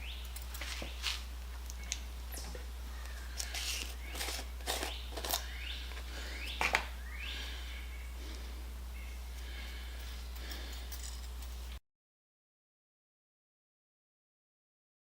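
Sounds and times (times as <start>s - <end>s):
steady low hum: 0.0s - 11.8s.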